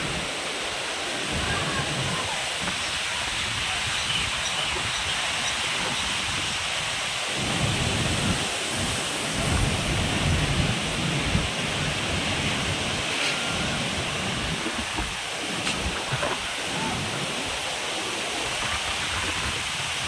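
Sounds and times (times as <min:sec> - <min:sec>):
heavy rain hissing: 0:00.0 - 0:20.0
thunder rumbling: 0:07.4 - 0:17.5.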